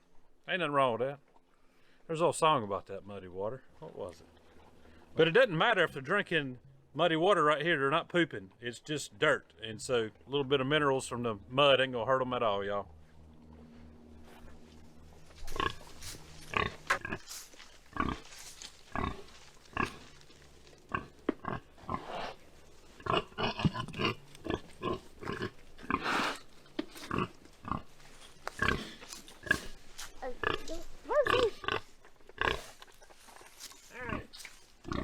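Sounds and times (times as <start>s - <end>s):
pigs grunting: 10.9s - 35.0s.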